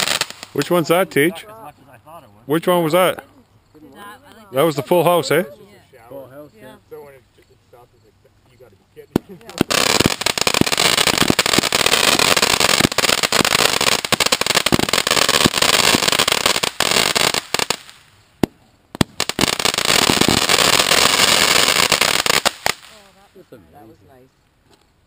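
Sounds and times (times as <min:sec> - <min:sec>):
fireworks crackling and popping: 0:00.0 - 0:03.2, 0:04.0 - 0:05.6, 0:08.9 - 0:23.2.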